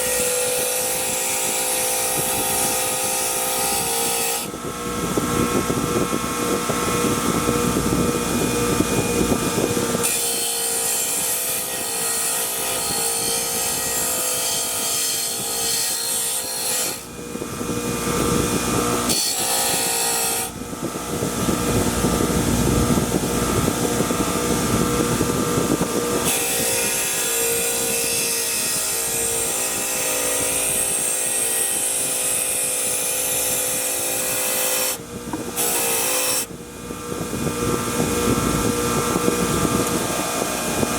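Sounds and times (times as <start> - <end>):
power tool grinding metal: 0.0 - 40.9.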